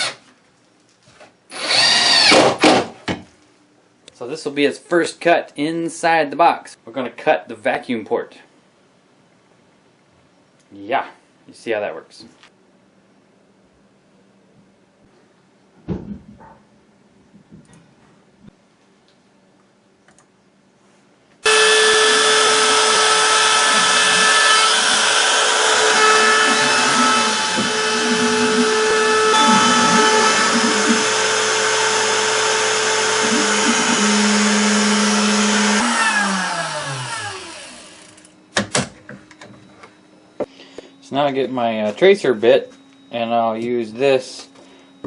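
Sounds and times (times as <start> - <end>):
router motor whining: 1.5 - 2.4, 21.4 - 38.3.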